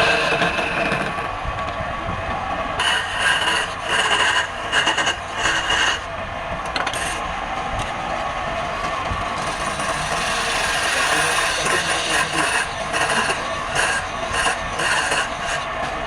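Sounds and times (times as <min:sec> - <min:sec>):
tool scraping spinning wood: 0:00.0 - 0:01.4, 0:02.8 - 0:07.3, 0:09.3 - 0:16.0
wood lathe running: 0:00.0 - 0:16.0
high squealing strokes: 0:09.4 - 0:15.8.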